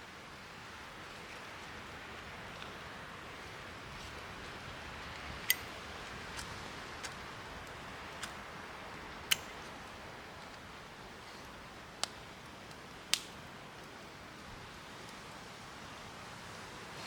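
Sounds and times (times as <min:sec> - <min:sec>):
wood fire crackling: 0:04.8 - 0:16.0
fire pops: 0:09.2 - 0:09.8, 0:11.3 - 0:14.0.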